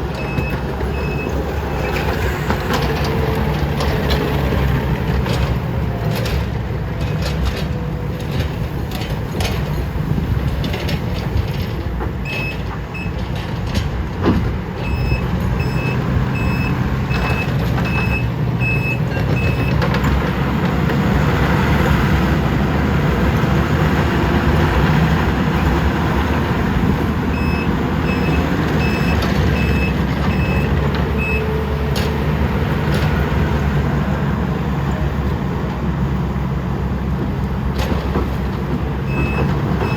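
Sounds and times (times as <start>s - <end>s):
diesel engines running under load: 0.0s - 39.9s
reversing alarm beeping: 0.2s - 2.2s, 12.2s - 13.2s, 14.8s - 19.8s, 27.3s - 31.5s, 39.1s - 39.9s
clanks and knocks: 1.8s - 21.0s, 28.2s - 33.5s, 37.2s - 39.9s.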